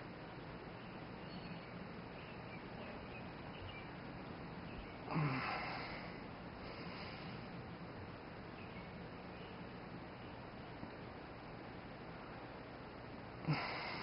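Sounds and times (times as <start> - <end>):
faint background hiss: 0.0 - 14.0
person grunting: 5.1 - 5.8.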